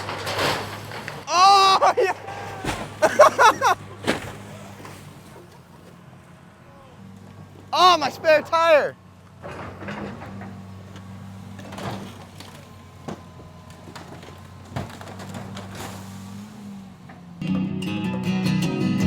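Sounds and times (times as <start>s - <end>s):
car being wrecked: 0.0s - 17.4s
heavy machine engine droning: 0.0s - 19.0s
music: 17.4s - 19.0s.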